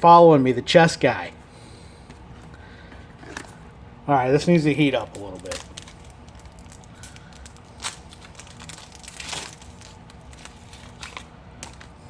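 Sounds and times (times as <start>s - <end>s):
wrapper crinkling and tearing: 5.0s - 12.0s.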